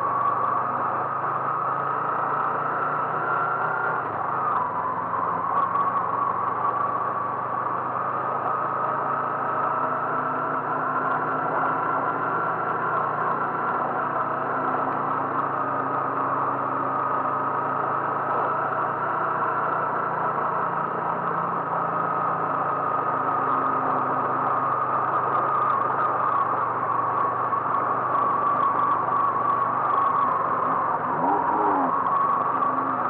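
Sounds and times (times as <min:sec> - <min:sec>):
car engine humming: 0:00.0 - 0:33.0
wavering whine: 0:19.6 - 0:33.0.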